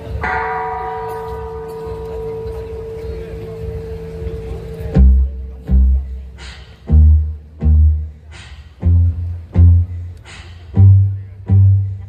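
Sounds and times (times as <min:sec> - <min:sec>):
deep bass notes on a beat: 0:04.8 - 0:12.0.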